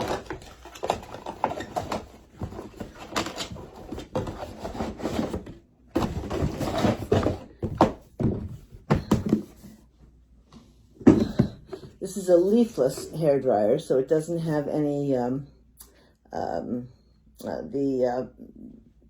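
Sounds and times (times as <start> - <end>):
packaging rustling: 0.0 - 8.0
thunks and knocks: 6.0 - 9.6, 11.0 - 11.8.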